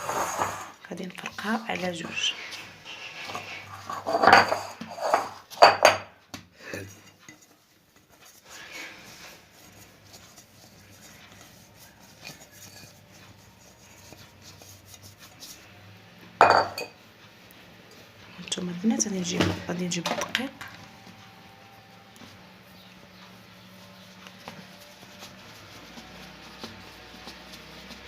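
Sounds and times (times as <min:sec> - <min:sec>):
utensils and dishes clattering: 0:00.0 - 0:07.6, 0:11.8 - 0:15.5, 0:16.4 - 0:17.0.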